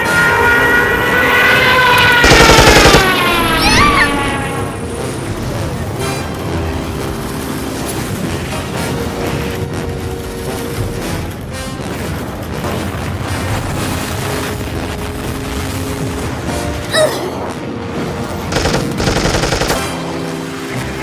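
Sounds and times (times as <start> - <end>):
music: 0.0 - 21.0
machine-gun fire: 2.2 - 3.5, 18.5 - 20.3.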